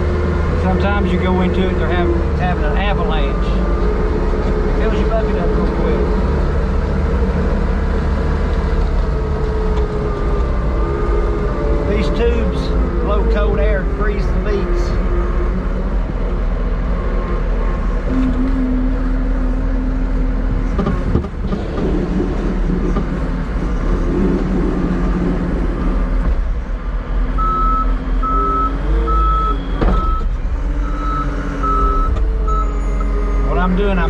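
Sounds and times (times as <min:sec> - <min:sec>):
heavy equipment engine running: 0:00.0 - 0:34.0
reverse alarm beeping: 0:27.4 - 0:33.2.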